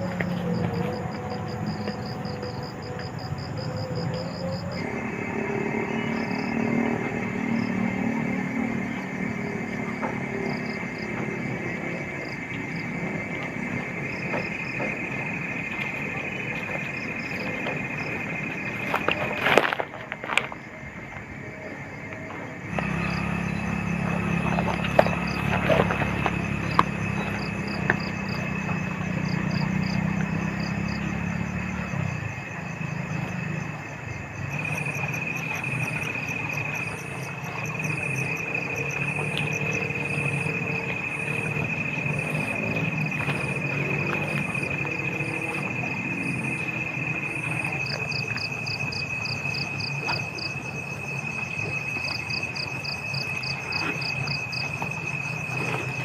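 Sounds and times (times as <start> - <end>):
insect high-pitched trill: 0.0 - 56.0
low drone: 0.0 - 56.0
pulsed insect chirps: 22.6 - 56.0.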